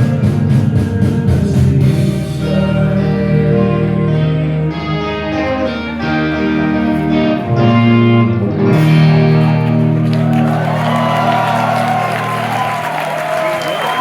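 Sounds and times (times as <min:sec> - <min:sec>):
rock band guitar chords ringing: 0:00.0 - 0:14.0
crowd cheering and whooping: 0:09.1 - 0:14.0.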